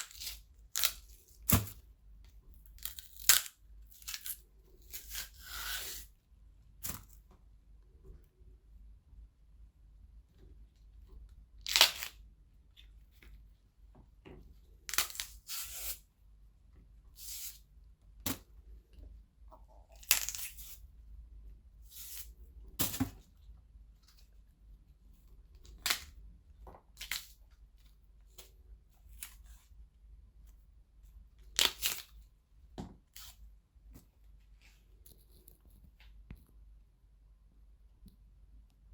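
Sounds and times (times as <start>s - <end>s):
celery stalks snapping: 2.8s - 4.4s.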